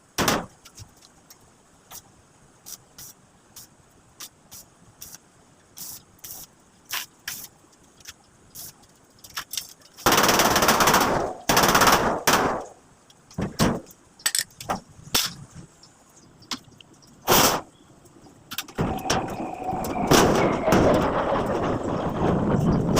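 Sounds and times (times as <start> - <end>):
welding arc crackling: 5.8 - 12.8.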